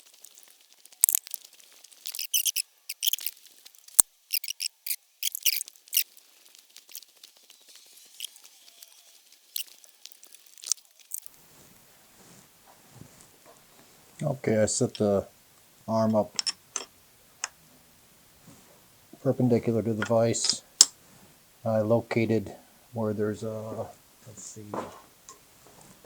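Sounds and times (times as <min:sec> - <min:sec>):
scratchy crackling handling noises: 0:00.0 - 0:15.2.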